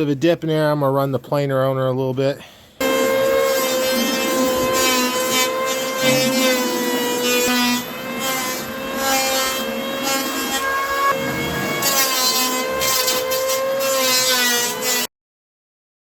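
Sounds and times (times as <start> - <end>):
cutter rasping on wood: 2.8 - 15.1
electric hand planer motor whine: 2.8 - 15.1.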